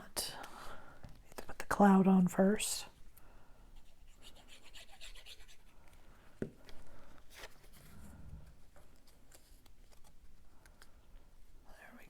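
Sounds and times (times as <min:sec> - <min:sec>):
paper rustling and scratching: 0:06.7 - 0:10.9.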